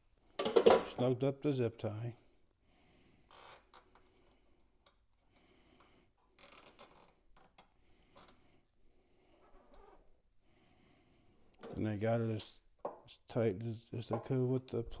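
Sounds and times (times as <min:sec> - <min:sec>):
zip tie clicking and rustling: 0:06.3 - 0:08.4.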